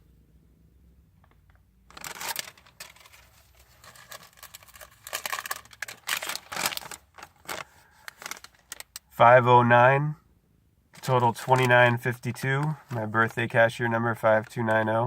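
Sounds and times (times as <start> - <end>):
paper receipts crinkling: 1.9 - 9.1, 11.0 - 15.0.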